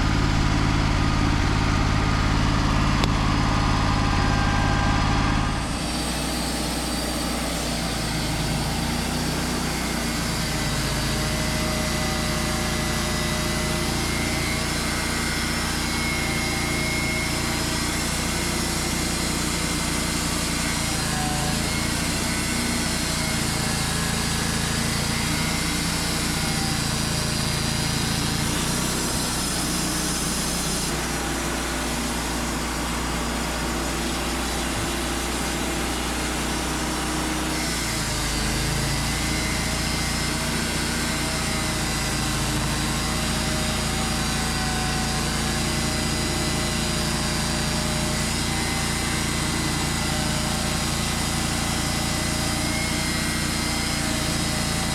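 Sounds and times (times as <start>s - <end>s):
sawmill engine running: 0.0s - 54.9s.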